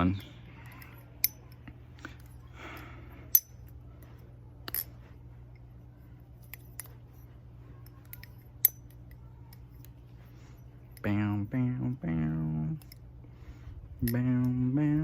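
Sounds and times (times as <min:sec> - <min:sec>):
butterfly knife trainer clacking: 0:07.8 - 0:10.0.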